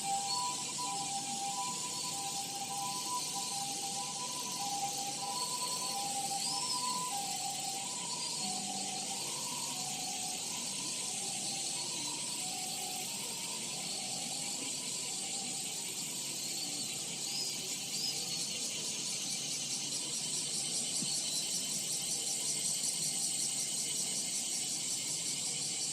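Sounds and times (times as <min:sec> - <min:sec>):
faint two-tone ambulance siren: 0:00.0 - 0:18.3
cicadas buzzing: 0:00.0 - 0:25.9.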